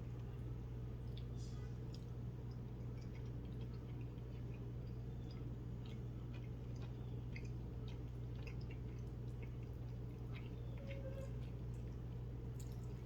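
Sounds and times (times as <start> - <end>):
person chewing food: 0.0 - 13.0.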